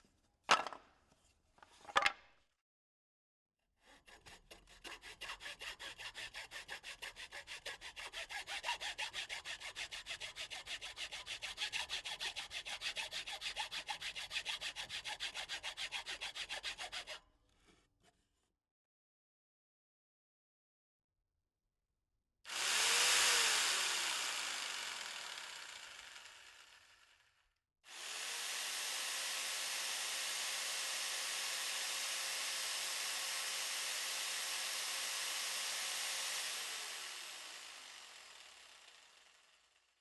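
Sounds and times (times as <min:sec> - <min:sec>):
power tool spinning: 0:22.5 - 0:40.0.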